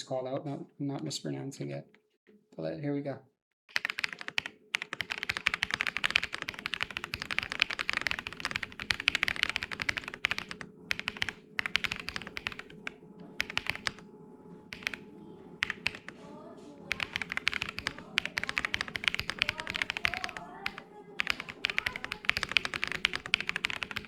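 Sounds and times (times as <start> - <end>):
mechanical keyboard typing: 3.7 - 14.1, 14.7 - 16.2, 16.9 - 24.0.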